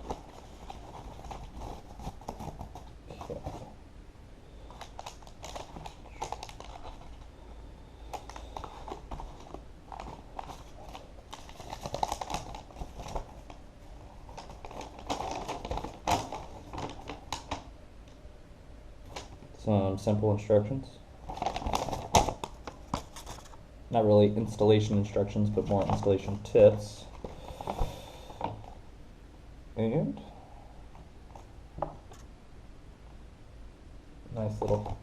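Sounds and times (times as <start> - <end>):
paper and packaging rustling: 0.0 - 3.7, 4.7 - 7.3, 8.0 - 17.7, 21.2 - 23.6, 25.4 - 28.8, 34.4 - 35.0.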